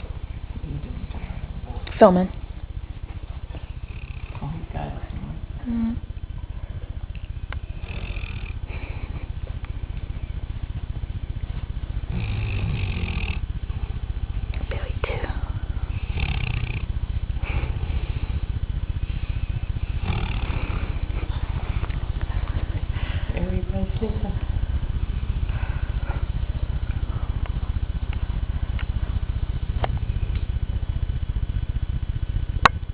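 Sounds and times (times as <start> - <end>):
dog snoring: 3.5 - 6.0, 7.1 - 9.2, 11.6 - 24.1.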